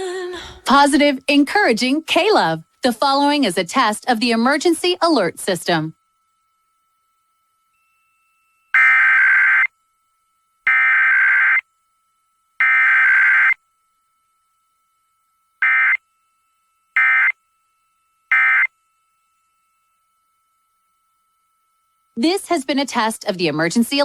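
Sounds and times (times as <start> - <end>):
digital data bursts: 18.3 - 18.7.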